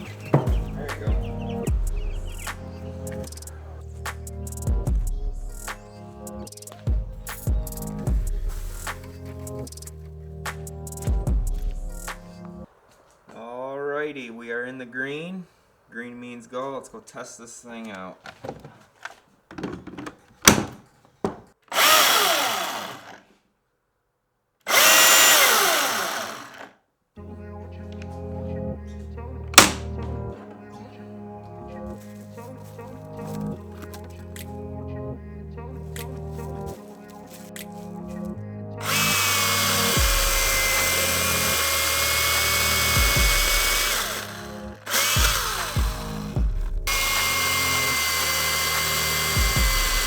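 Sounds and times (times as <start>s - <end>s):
background music with low beat: 0.0s - 12.7s, 27.3s - 30.4s, 31.0s - 50.0s
electric chainsaw whirring: 20.4s - 23.4s, 24.7s - 26.8s, 29.6s - 30.3s, 38.8s - 50.0s
handling clicks: 29.6s - 30.2s.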